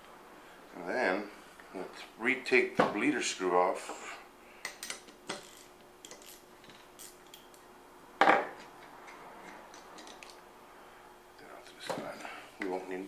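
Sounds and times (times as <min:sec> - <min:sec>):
metal tools clinking and tapping: 0:04.6 - 0:07.5.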